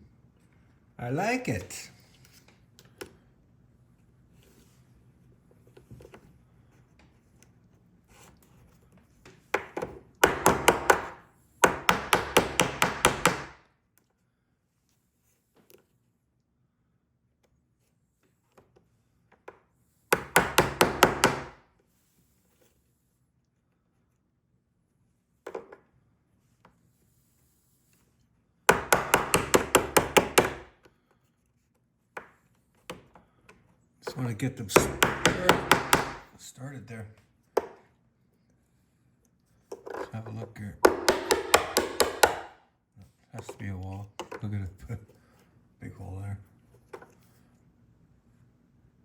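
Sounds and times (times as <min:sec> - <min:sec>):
small hammer tapping on metal: 0:40.8 - 0:42.5.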